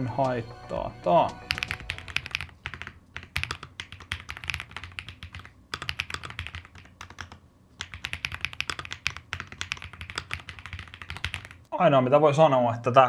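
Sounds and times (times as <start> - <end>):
mechanical keyboard typing: 1.4 - 11.7.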